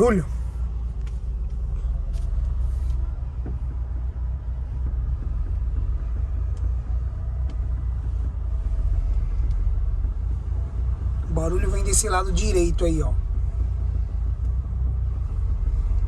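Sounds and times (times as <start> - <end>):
car cabin low rumble: 0.0 - 16.0
faint suspension knocks: 0.8 - 8.4.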